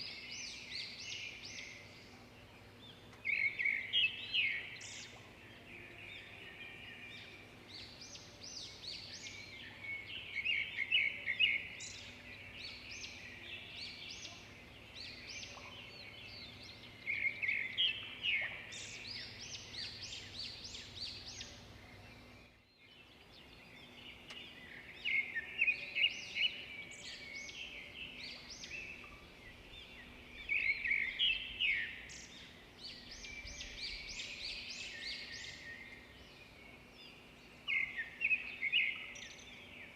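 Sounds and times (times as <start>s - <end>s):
songbirds chirping and trilling: 0.0s - 39.9s.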